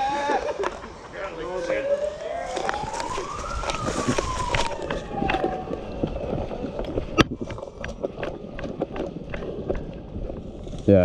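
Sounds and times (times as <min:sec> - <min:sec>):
siren wailing: 0:00.0 - 0:07.6
footsteps: 0:01.6 - 0:10.9.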